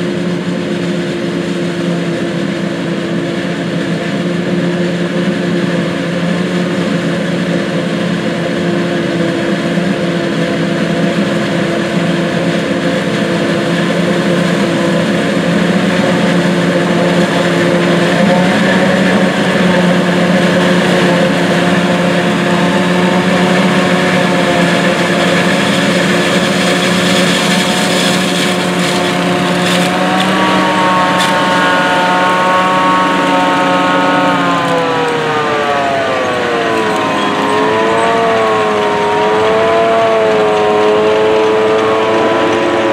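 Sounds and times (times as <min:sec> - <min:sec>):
diesel engines running under load: 0:00.0 - 0:42.9
high-pitched whine: 0:00.0 - 0:42.9.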